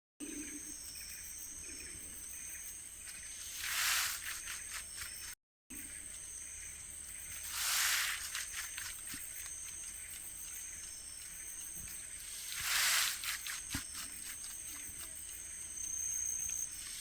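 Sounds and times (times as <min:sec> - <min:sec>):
plant rustling: 0:03.0 - 0:05.3, 0:07.2 - 0:15.4.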